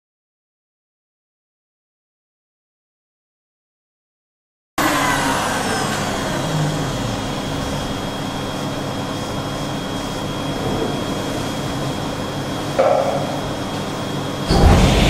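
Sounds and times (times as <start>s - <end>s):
milling machine spindle whine: 4.8s - 15.0s.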